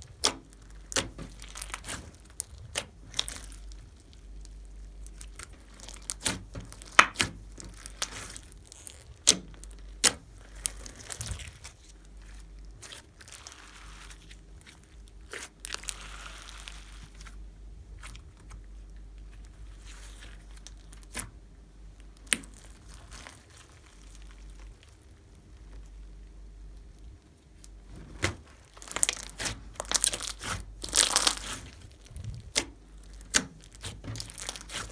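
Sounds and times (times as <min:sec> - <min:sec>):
slime air pops and crackles: 0:05.8 - 0:10.2, 0:28.2 - 0:34.9
slime squeezed by hand: 0:28.0 - 0:34.9.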